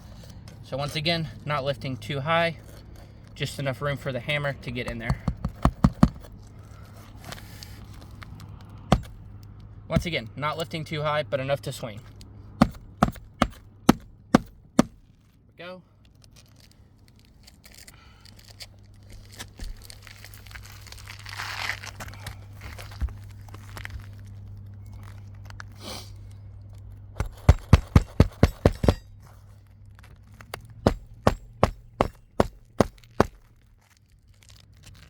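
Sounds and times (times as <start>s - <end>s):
shingle crinkling: 0.0s - 10.9s, 11.5s - 35.0s
hammer striking roofing nails: 4.9s - 6.3s, 8.9s - 9.3s, 12.6s - 15.0s, 27.2s - 29.1s, 30.8s - 33.5s.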